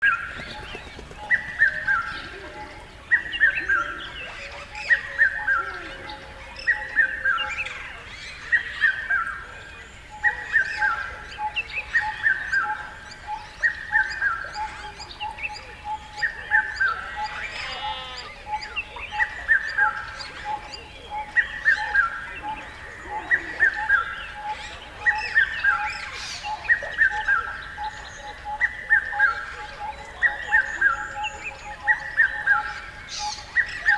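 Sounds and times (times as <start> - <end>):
harsh bird call: 15.8 - 19.6.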